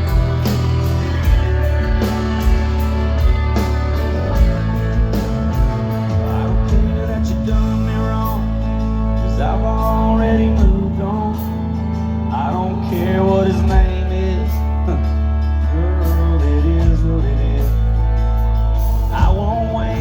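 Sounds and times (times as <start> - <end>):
country song with guitar and beat: 0.0 - 20.0
person singing: 5.5 - 20.0.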